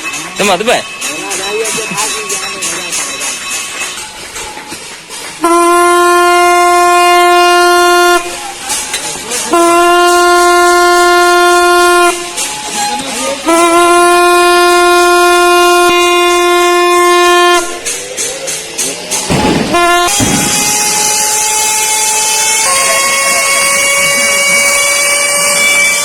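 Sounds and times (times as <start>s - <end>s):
ship's horn blasts: 5.4s - 18.0s, 19.3s - 26.0s.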